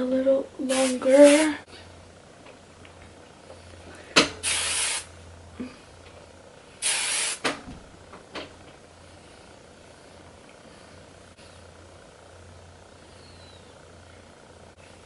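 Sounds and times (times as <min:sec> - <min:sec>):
hairspray hissing: 0:00.7 - 0:01.6, 0:04.4 - 0:05.1, 0:06.8 - 0:07.6.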